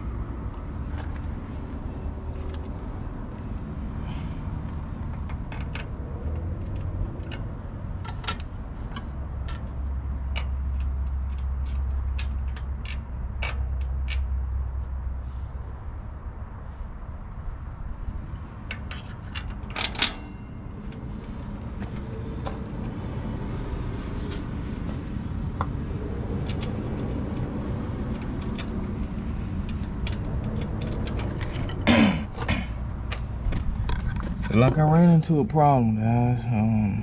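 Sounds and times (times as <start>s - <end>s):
steady low rumble: 0.0s - 37.0s
metal clatter: 18.6s - 22.9s.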